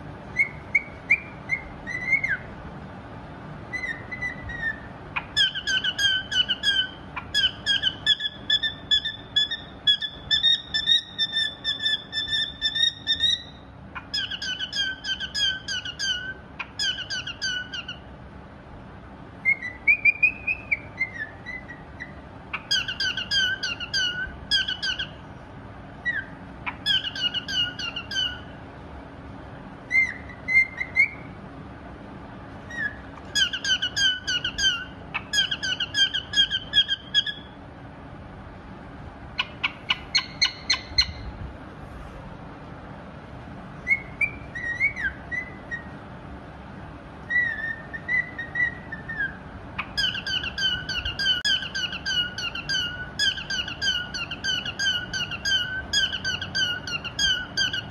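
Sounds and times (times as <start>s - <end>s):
cockatiel whistling: 0.3s - 2.5s, 3.7s - 18.0s, 19.4s - 25.2s, 26.0s - 28.5s, 29.9s - 31.3s, 32.7s - 37.5s, 39.4s - 41.2s, 43.8s - 45.9s, 47.3s - 57.9s.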